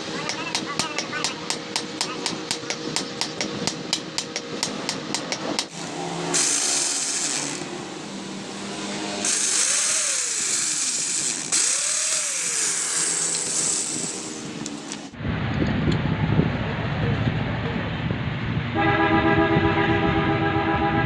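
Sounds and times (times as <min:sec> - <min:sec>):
power tool grinding metal: 0:00.0 - 0:15.0.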